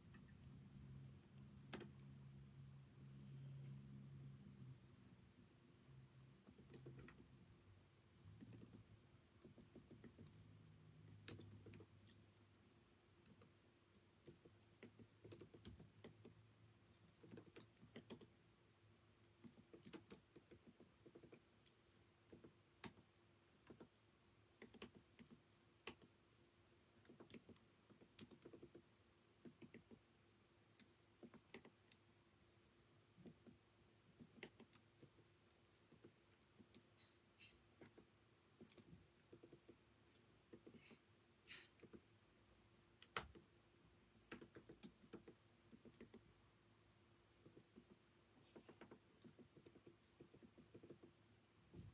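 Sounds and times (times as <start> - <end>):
typing on computer keyboard: 6.4 - 7.3, 8.3 - 10.4, 11.1 - 12.2, 14.2 - 16.4, 17.0 - 18.3, 19.2 - 21.5, 22.3 - 24.0, 24.6 - 26.1, 27.0 - 30.0, 30.8 - 32.0, 34.2 - 36.9, 37.8 - 39.8, 44.3 - 46.2, 47.4 - 51.2.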